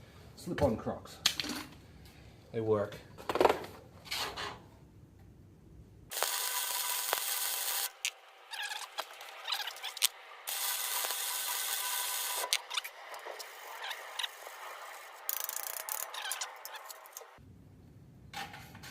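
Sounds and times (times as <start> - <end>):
arc welder sizzling hiss: 6.1 - 17.4.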